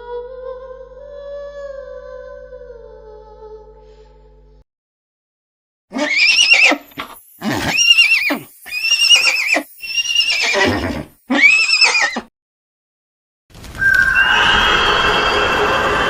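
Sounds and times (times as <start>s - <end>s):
horse whinnying: 5.9s - 12.3s, 13.8s - 16.0s.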